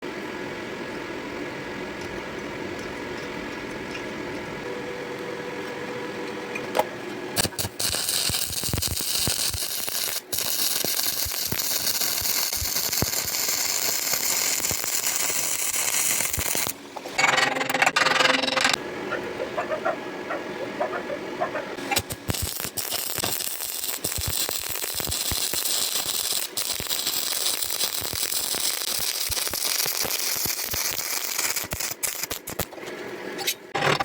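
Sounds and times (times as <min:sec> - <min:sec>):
welding arc crackling hiss: 0:07.4 - 0:17.2, 0:21.8 - 0:32.8.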